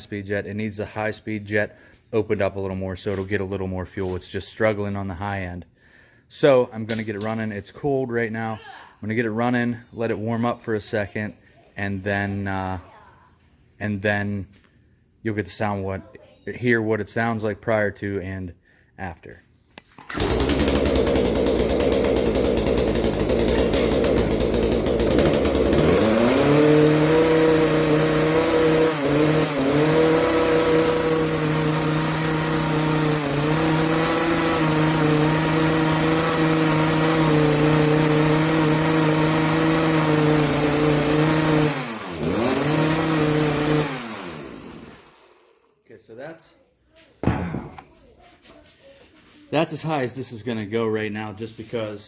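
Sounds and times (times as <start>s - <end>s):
chainsaw engine revving: 20.0s - 45.7s.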